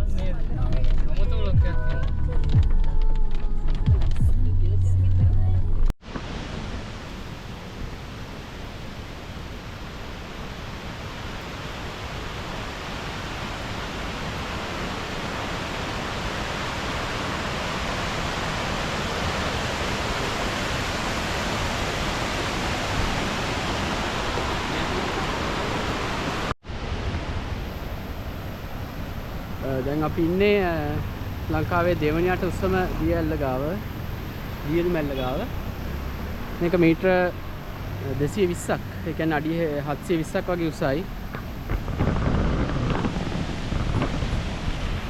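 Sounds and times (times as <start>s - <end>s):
waterfall rushing: 6.0s - 41.9s.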